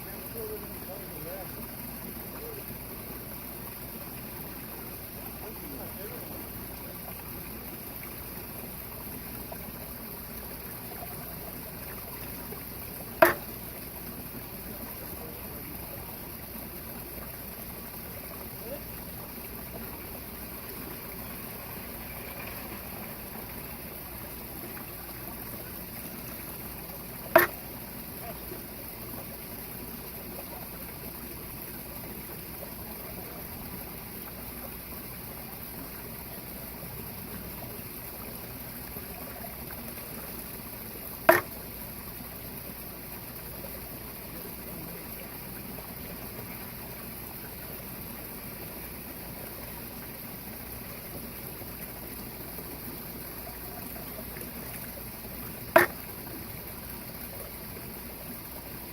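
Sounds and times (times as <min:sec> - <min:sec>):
trickling water: 0:00.0 - 0:58.9
bamboo tube clacking on stone: 0:13.2 - 0:13.4, 0:27.4 - 0:27.6, 0:41.3 - 0:41.5.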